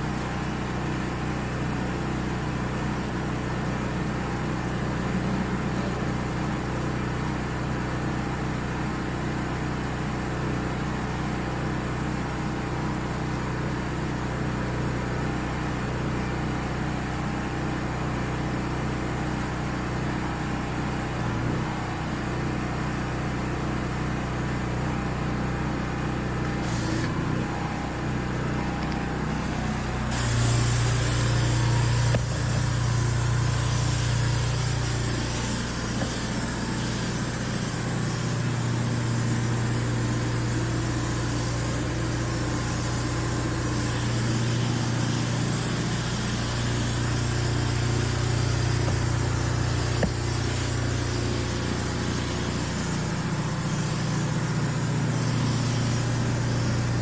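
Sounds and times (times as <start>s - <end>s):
engine running steadily: 0.0s - 57.0s
even hiss: 30.1s - 57.0s.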